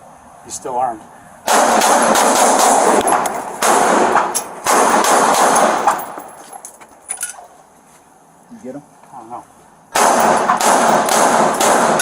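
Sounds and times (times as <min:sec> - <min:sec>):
rapid gunfire bursts: 0:01.5 - 0:03.0, 0:03.6 - 0:05.9, 0:10.0 - 0:12.0.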